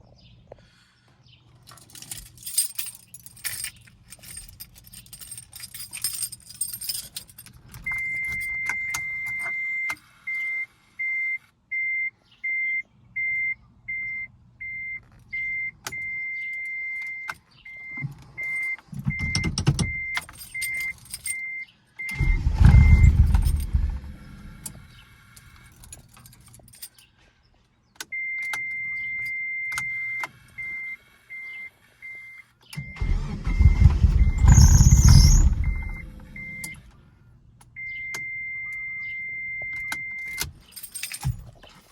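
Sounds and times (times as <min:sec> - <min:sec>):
keys jingling: 0:01.6 - 0:09.5, 0:18.4 - 0:21.4, 0:22.1 - 0:27.1, 0:33.0 - 0:36.8, 0:39.8 - 0:41.9
car warning chime beeping: 0:07.9 - 0:24.8, 0:28.1 - 0:36.9, 0:37.7 - 0:40.5
car engine cranking and running: 0:22.0 - 0:26.7, 0:32.7 - 0:37.0.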